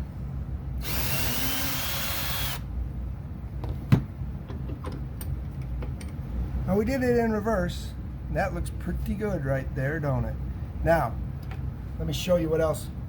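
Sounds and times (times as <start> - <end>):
power drill spinning: 0.8 - 2.6.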